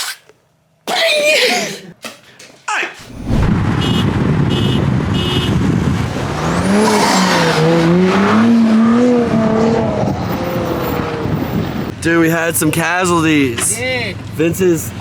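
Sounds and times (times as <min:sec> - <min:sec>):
rushing driving noise: 0:03.0 - 0:13.4
car engine revving: 0:03.1 - 0:11.9.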